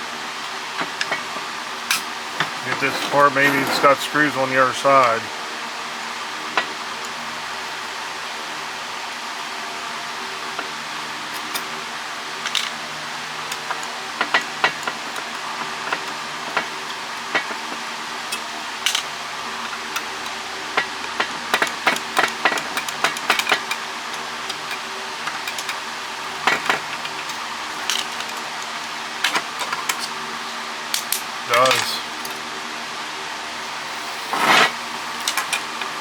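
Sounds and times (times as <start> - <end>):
steady background hum: 0.0 - 36.0
hand tools tapping metal: 1.9 - 5.2, 31.0 - 32.4, 34.0 - 36.0.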